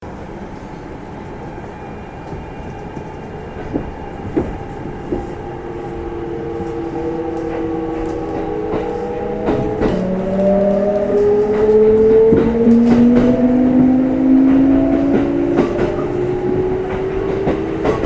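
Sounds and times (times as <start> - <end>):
train running rumble: 0.0 - 18.0
wheel clacks over rail joints: 7.3 - 18.0.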